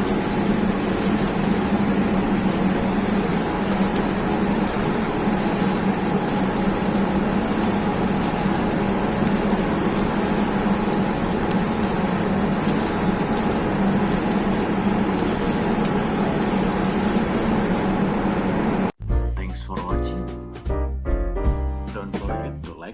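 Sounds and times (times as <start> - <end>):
arc welding crackle and hiss: 0.0 - 18.9
welding machine hum: 0.0 - 18.9.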